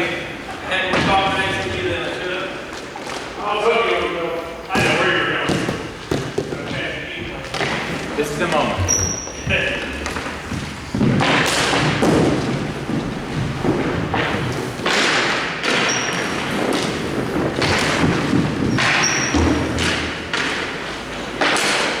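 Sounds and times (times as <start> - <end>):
thuds and scuffing knocks: 4.7 - 20.2
high squeaks: 8.5 - 10.1, 15.7 - 16.4, 18.7 - 19.6.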